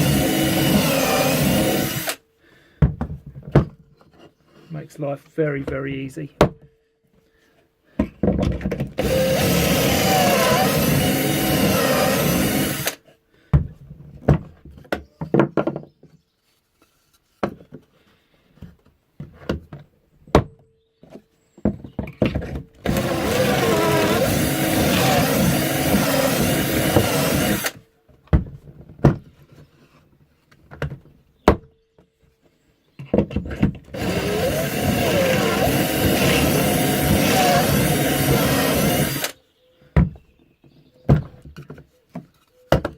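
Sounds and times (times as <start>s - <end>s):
power drill drilling: 0.0s - 2.2s, 9.0s - 13.0s, 22.8s - 27.8s, 33.9s - 39.4s.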